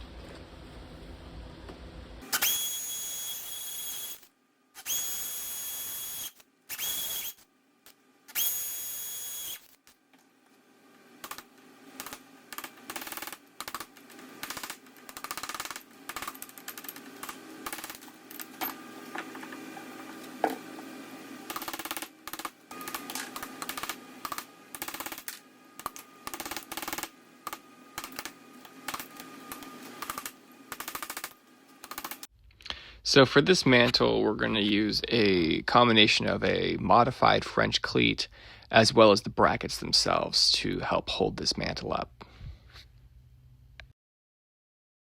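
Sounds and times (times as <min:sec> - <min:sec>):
power tool cutting stone: 0:02.3 - 0:04.2, 0:04.8 - 0:07.4, 0:08.3 - 0:09.6.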